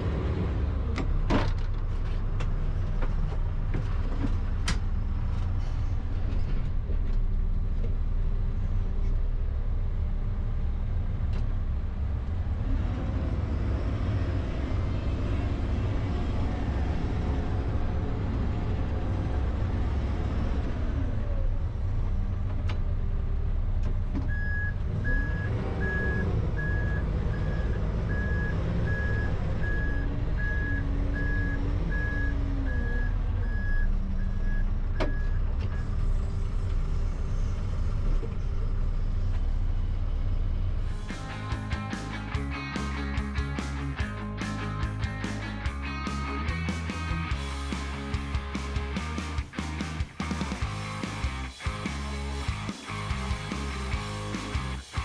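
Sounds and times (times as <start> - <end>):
diesel engine running under load: 0.0 - 45.6
reversing alarm beeping: 24.3 - 35.2.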